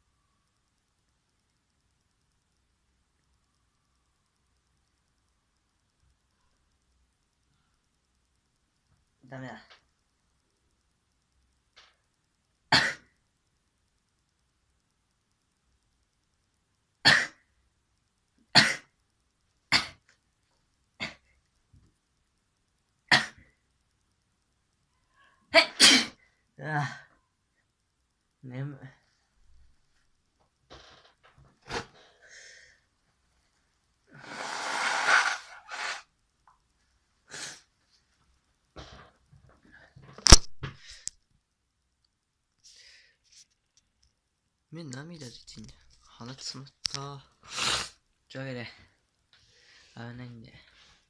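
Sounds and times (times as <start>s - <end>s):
person coughing: 12.7s - 13.1s
person sneezing: 23.1s - 23.4s, 25.5s - 26.2s, 47.5s - 48.0s
person breathing and sniffing: 34.1s - 36.1s, 37.3s - 37.7s, 47.4s - 48.0s.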